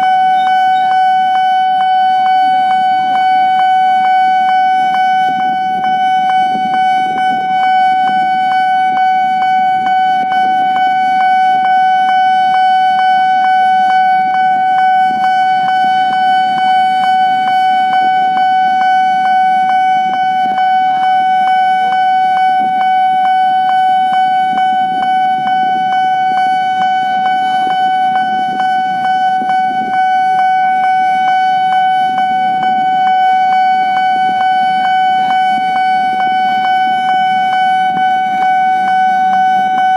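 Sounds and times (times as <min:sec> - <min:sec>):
level-crossing warning alarm: 0:00.0 - 0:39.9.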